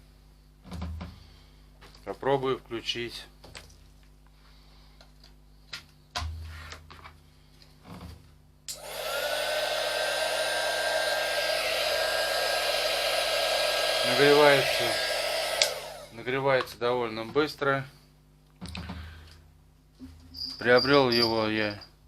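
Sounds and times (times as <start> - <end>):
hot air gun clicks: 8.7 - 8.9, 14.2 - 15.9
hot air gun fan blowing: 8.7 - 16.5.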